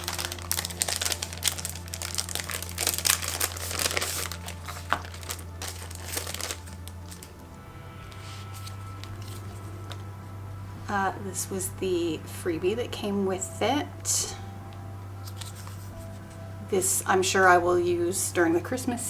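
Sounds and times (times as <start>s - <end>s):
packaging crinkling and rustling: 0.0s - 7.4s, 15.2s - 16.4s
packaging tearing: 0.0s - 7.4s, 15.2s - 16.1s.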